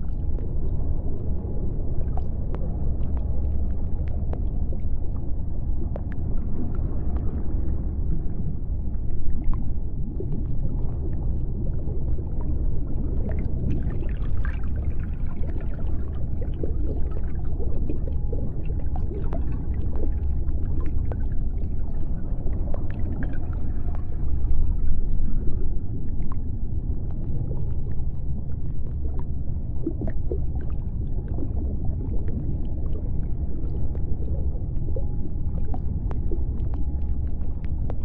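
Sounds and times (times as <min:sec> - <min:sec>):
small bubbling ticks: 0:00.0 - 0:38.0
water splashing and trickling: 0:09.3 - 0:38.0
aquarium filter water flow: 0:09.4 - 0:38.0.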